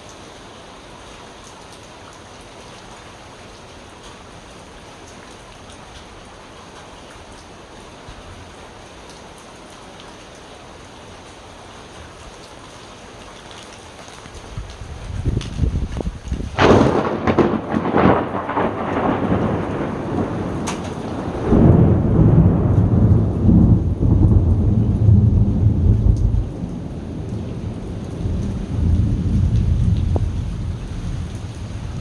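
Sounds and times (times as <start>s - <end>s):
steady rain: 0.0s - 32.0s
thunder clap and rumble: 14.6s - 32.0s.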